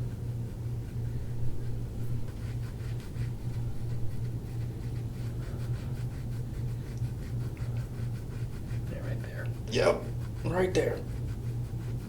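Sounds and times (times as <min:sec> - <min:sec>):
hands rubbing skin in massage: 0:00.0 - 0:12.0
steady low hum: 0:00.0 - 0:12.0.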